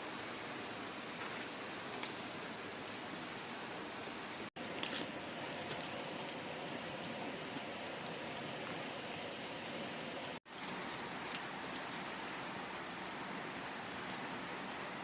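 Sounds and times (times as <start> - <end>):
rain pattering: 0.0 - 15.0
water drip ticks: 4.0 - 15.0.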